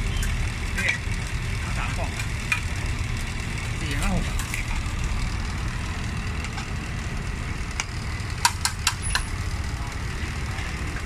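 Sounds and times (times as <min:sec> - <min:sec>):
engines idling: 0:00.0 - 0:11.0
street traffic rumble: 0:00.0 - 0:11.0
sharp clicks: 0:07.8 - 0:09.3.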